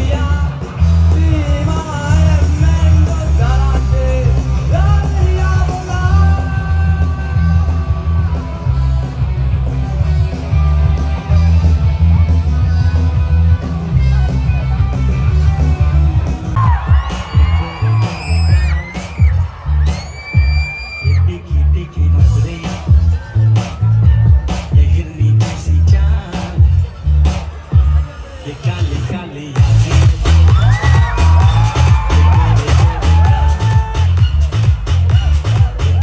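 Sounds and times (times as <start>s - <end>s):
person singing: 0.0s - 19.4s
music with pulsing bass: 0.0s - 36.0s.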